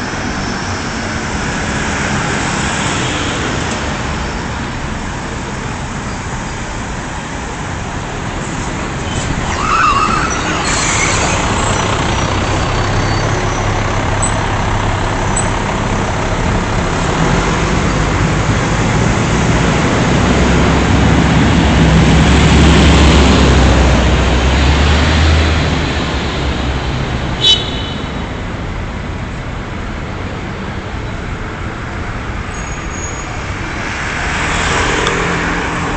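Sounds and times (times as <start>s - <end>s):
heavy vehicle engine running: 0.0s - 35.9s
street traffic: 0.0s - 35.9s
brief high-pitched squeal: 9.0s - 12.0s.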